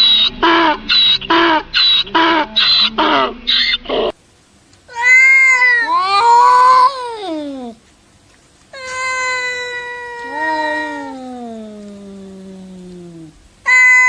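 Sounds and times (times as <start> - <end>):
rapid animal calls: 0.0 - 4.2
cat meowing: 4.9 - 7.8, 8.7 - 14.0.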